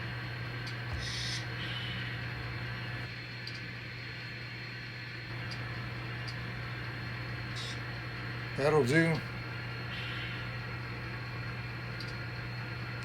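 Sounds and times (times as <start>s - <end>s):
model locomotive drone: 0.0s - 13.0s.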